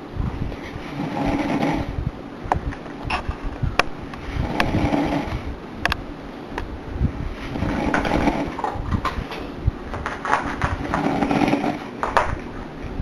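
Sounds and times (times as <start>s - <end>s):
woman snoring loudly: 4.4s - 5.4s.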